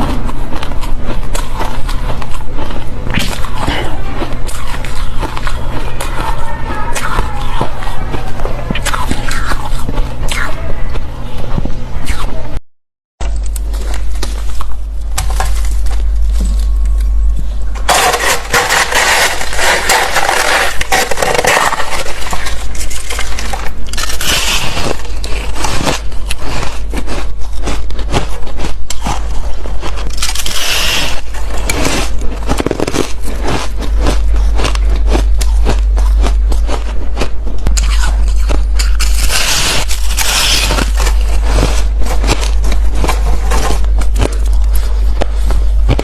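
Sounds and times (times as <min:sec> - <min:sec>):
crunching ice: 0:00.0 - 0:11.0, 0:13.3 - 0:46.0
low rumble: 0:13.2 - 0:26.4, 0:31.2 - 0:46.0.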